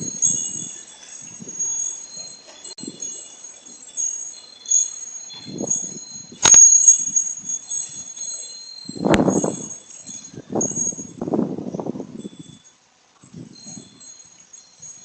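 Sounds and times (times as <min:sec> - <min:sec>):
strong gusting wind: 0:00.0 - 0:03.2, 0:05.3 - 0:12.6, 0:13.2 - 0:15.0
wind rumbling on microphone: 0:00.0 - 0:04.0, 0:04.6 - 0:15.0
metal wind chimes ringing: 0:00.0 - 0:15.0
sharp loud clack: 0:06.4 - 0:06.8.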